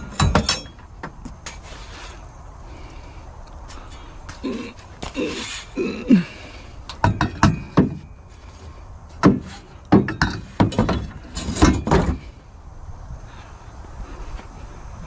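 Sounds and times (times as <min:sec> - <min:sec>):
metal tubes clanking: 0:00.0 - 0:01.6, 0:06.9 - 0:12.5.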